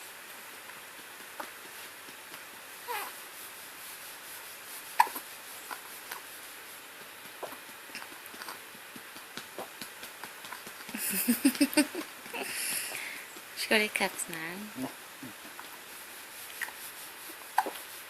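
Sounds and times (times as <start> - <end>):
baby hiccuping: 5.0 - 5.2, 17.6 - 17.8.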